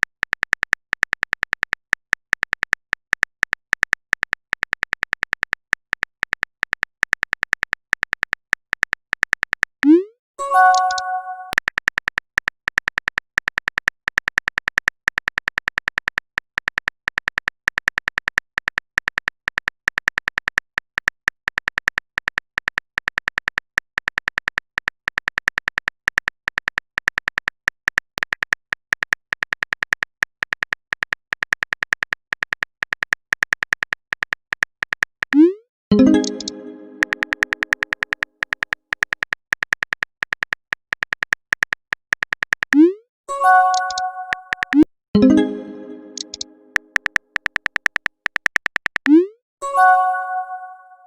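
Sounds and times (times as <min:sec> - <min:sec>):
keyboard typing clicks: 0:00.0 - 0:50.7
short chime of steady tones: 0:10.4 - 0:11.6.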